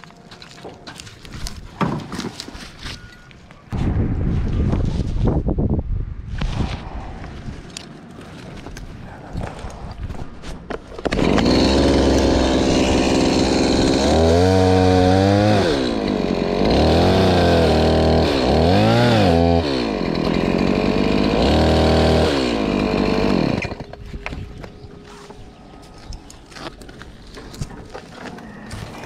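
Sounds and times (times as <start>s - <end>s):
chainsaw revving: 11.0s - 24.0s.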